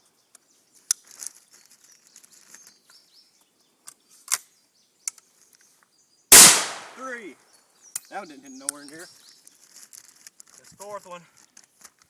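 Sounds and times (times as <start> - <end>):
light rustles: 0.4 - 3.0, 8.7 - 12.0
shotgun action metallic clicks: 6.3 - 7.0.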